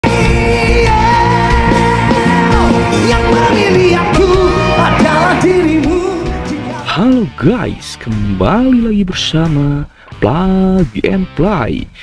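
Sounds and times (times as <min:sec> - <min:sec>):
rock band playing: 0:00.0 - 0:08.6
person singing sustained notes: 0:00.1 - 0:07.0.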